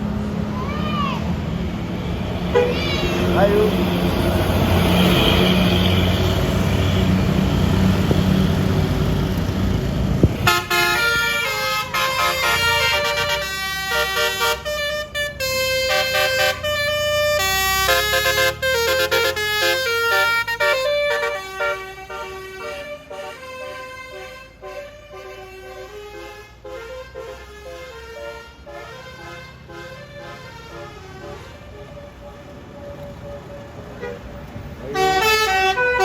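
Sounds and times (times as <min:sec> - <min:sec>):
bus engine running: 0:00.0 - 0:36.0
musical air horn tune: 0:10.4 - 0:32.1, 0:34.9 - 0:36.0.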